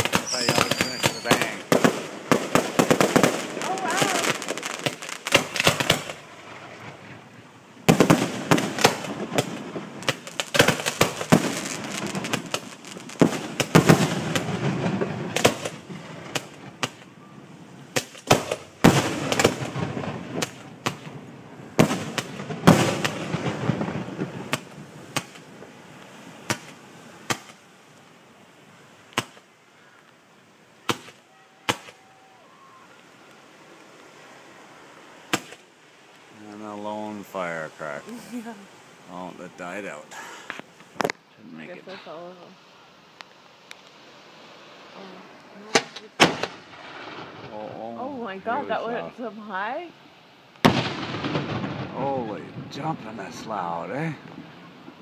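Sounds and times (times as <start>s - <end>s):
fireworks cracks and booms: 0.0s - 7.2s, 7.8s - 17.1s, 17.9s - 25.7s, 26.4s - 27.6s, 45.8s - 47.8s, 50.6s - 55.0s.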